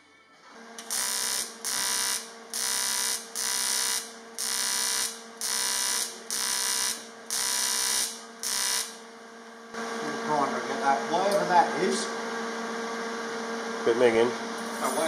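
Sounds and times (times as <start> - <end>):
welding set hum: 0.4 - 15.0
welding arc buzzing: 0.8 - 10.2, 14.6 - 15.0.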